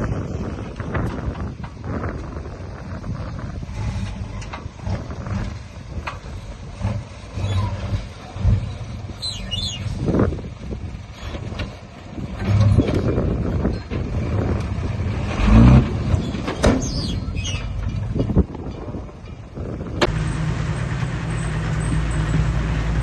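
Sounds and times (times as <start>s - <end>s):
heavy diesel engine running: 0.0s - 23.0s
knocks and clanks: 15.7s - 20.3s.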